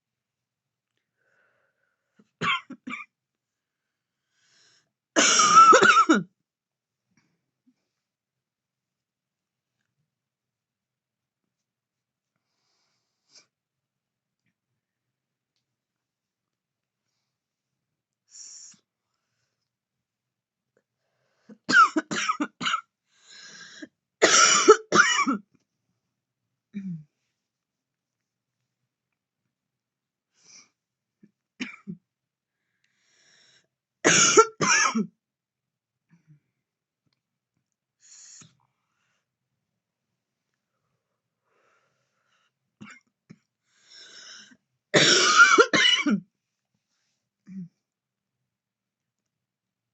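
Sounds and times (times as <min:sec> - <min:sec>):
faint breath: 0:03.6 - 0:04.9, 0:12.4 - 0:13.6, 0:32.5 - 0:33.7, 0:40.7 - 0:42.6, 0:43.6 - 0:44.6
woman coughing: 0:05.2 - 0:06.3, 0:21.7 - 0:22.8, 0:24.2 - 0:25.4, 0:34.1 - 0:35.1, 0:45.0 - 0:46.2.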